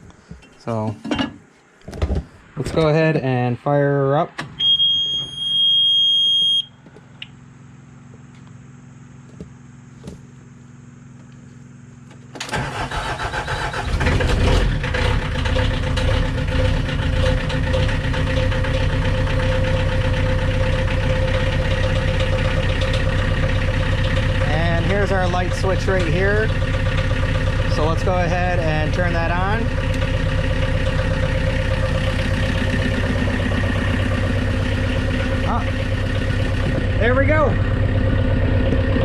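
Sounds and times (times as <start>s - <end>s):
faint hum: 0.0s - 13.0s
constant whine: 0.0s - 39.0s
high steady beep: 4.6s - 6.8s
diesel engine cranking and idling: 9.8s - 39.0s.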